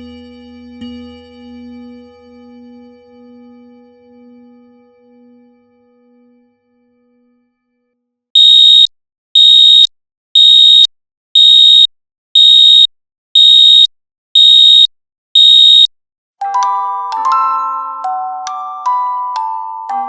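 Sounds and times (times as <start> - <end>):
alarm clock beeping: 8.4 - 15.9.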